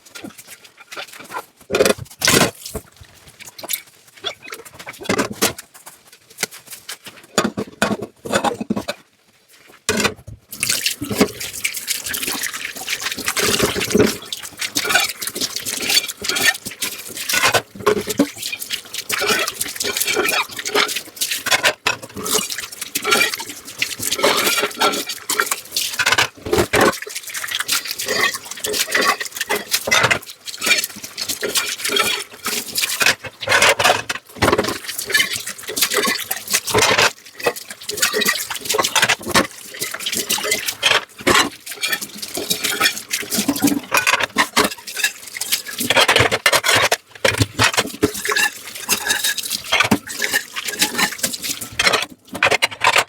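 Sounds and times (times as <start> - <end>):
water running and splashing: 10.4 - 52.5.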